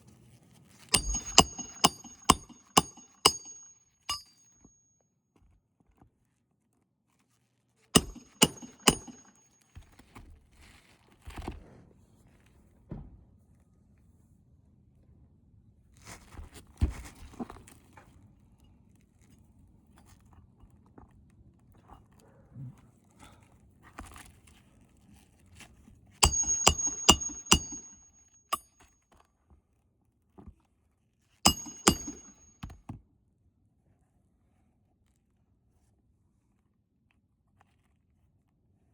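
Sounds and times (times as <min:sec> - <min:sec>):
sharp metallic taps: 0:01.0 - 0:04.3, 0:08.0 - 0:09.3, 0:26.2 - 0:28.7, 0:31.5 - 0:32.5.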